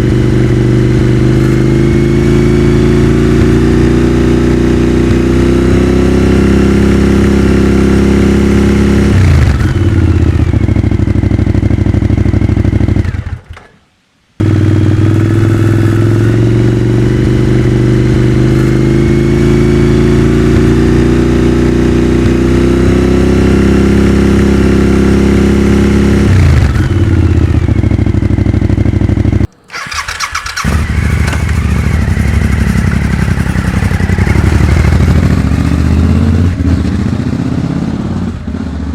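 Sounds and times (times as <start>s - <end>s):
motorcycle engine revving: 0.0s - 13.7s, 14.4s - 38.9s.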